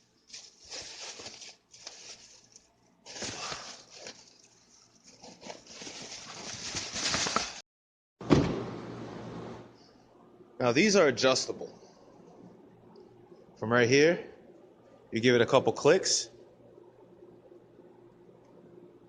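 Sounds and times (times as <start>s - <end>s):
rustling and scraping handling noise: 0.1s - 7.6s.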